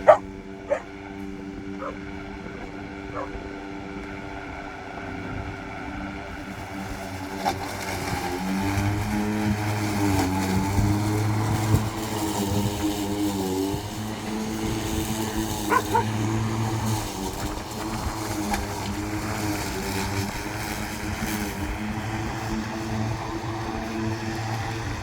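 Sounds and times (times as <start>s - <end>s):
lawn mower cutting grass: 0.0s - 25.0s.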